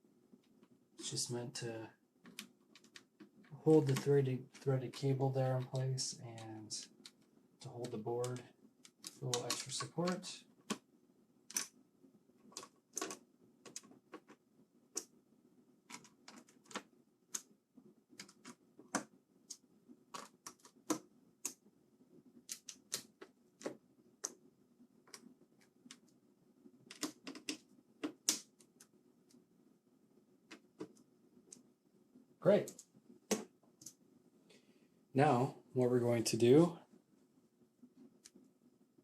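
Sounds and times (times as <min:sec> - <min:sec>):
plastic and metal parts clicking: 0:07.8 - 0:10.8, 0:12.5 - 0:15.1, 0:15.9 - 0:17.5, 0:26.9 - 0:28.8.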